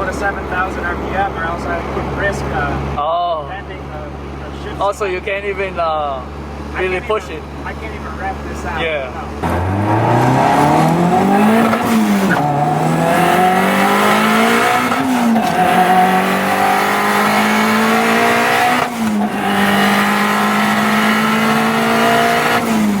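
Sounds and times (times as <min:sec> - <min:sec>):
car engine accelerating hard: 0:00.0 - 0:23.0.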